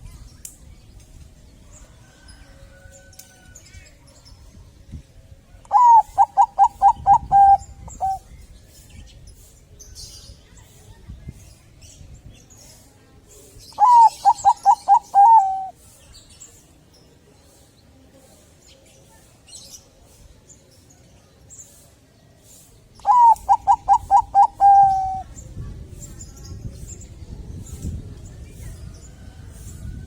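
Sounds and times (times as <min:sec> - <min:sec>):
dove cooing: 0:05.7 - 0:08.2, 0:13.8 - 0:15.7, 0:23.0 - 0:25.3.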